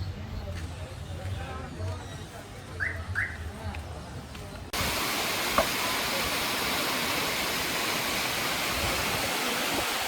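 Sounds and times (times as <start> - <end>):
waterfall rushing: 4.8 - 10.0.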